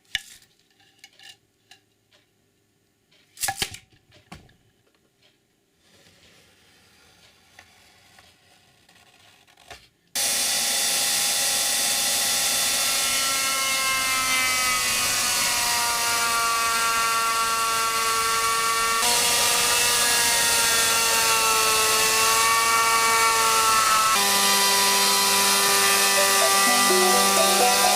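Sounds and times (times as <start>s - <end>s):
electric power tool motor whine: 10.2s - 27.9s.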